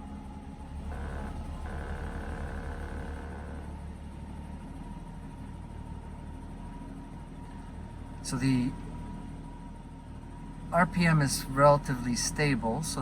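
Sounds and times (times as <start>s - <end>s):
car engine idling: 0.6s - 4.6s.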